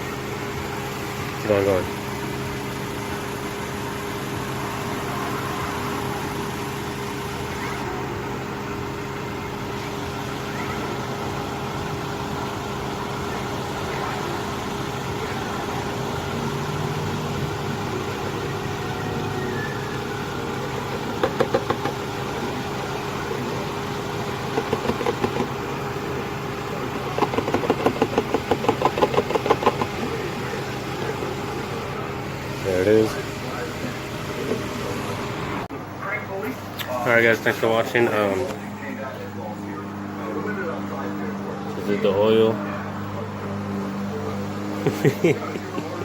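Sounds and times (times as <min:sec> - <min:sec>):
steady mechanical hum: 0:00.0 - 0:46.0
motor oil glugging from jug: 0:09.0 - 0:35.6.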